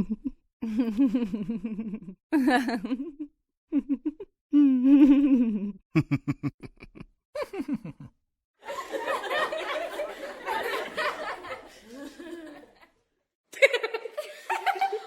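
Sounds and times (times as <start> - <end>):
staccato ha-ha laugh: 6.0 - 12.9
group of people laughing: 6.0 - 15.0.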